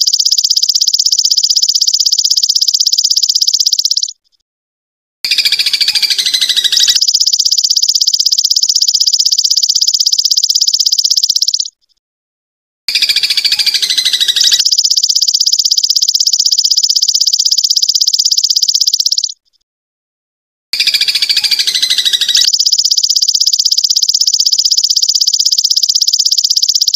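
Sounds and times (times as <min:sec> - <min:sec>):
high chirping calls: 0:00.0 - 0:04.2, 0:05.3 - 0:11.8, 0:12.9 - 0:19.4, 0:20.8 - 0:26.9
fast high bird trill: 0:05.3 - 0:08.6, 0:12.9 - 0:16.4, 0:20.8 - 0:25.1
high-pitched insect trill: 0:12.9 - 0:19.3.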